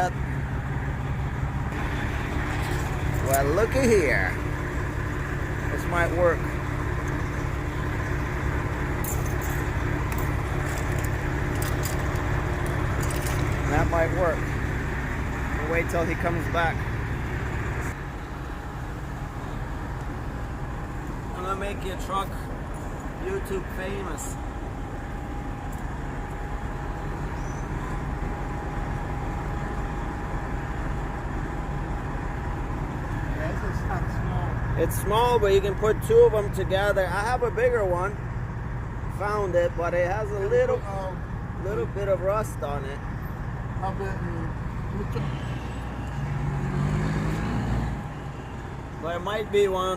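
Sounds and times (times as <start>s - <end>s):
truck engine idling: 0.0s - 47.0s, 47.9s - 49.9s
small metal parts clinking: 9.0s - 13.7s.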